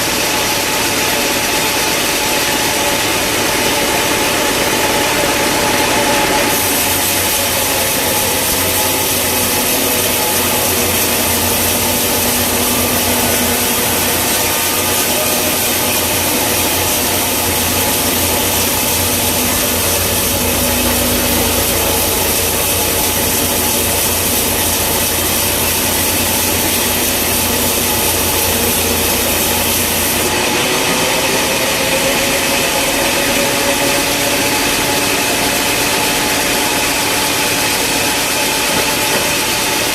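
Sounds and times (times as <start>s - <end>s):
engine running: 0.0s - 39.9s
saw cutting through log: 0.0s - 39.9s.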